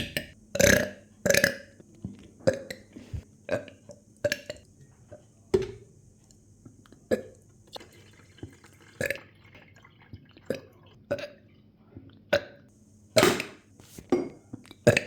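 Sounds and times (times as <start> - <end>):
person burping: 0.0 - 1.8, 2.4 - 4.6, 7.1 - 7.4.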